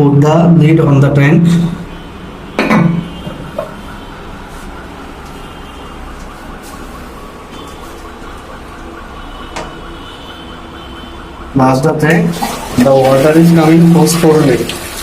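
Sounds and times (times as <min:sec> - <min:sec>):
fill valve whine: 0:00.0 - 0:15.0
water hissing into toilet tank: 0:12.3 - 0:15.0.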